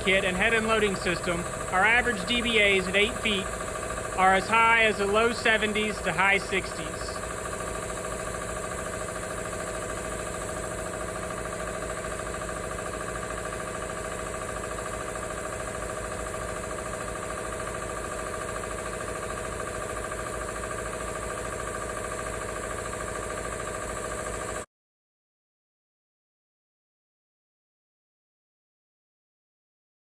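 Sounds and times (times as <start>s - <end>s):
air compressor humming: 0.0s - 24.6s.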